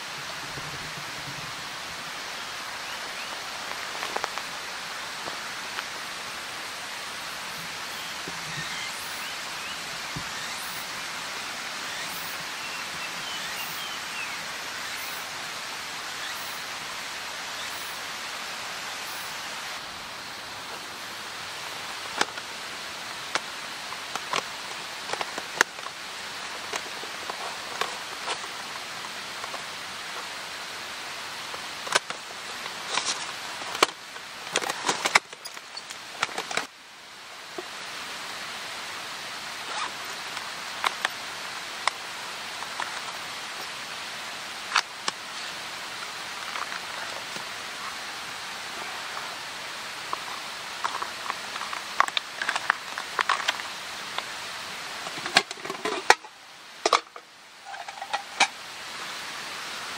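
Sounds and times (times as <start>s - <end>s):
hiss of falling water: 0.0s - 59.9s.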